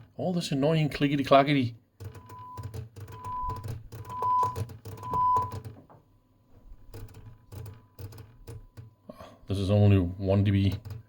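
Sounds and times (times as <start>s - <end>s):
test tone beeps: 2.2s - 5.6s.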